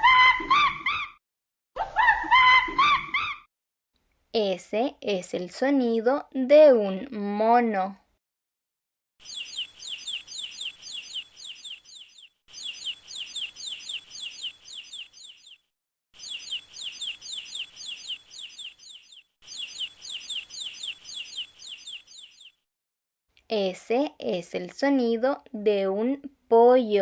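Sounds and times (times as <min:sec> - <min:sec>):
chick peeping: 0:09.2 - 0:15.6, 0:16.2 - 0:22.5.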